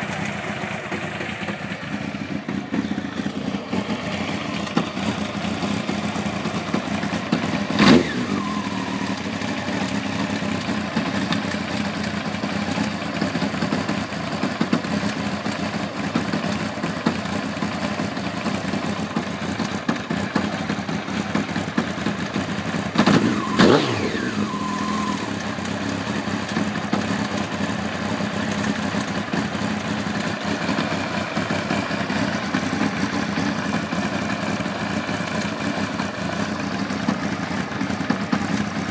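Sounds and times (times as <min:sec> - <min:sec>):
motorcycle engine idling: 0:00.0 - 0:38.9
throttle blips revving: 0:07.8 - 0:09.2, 0:23.1 - 0:25.4.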